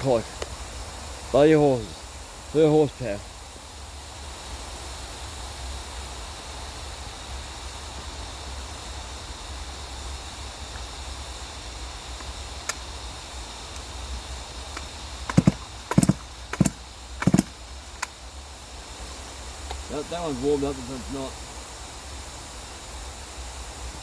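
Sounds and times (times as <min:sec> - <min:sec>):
outdoor background hiss: 0:00.0 - 0:24.0
sharp knocks: 0:15.3 - 0:18.1.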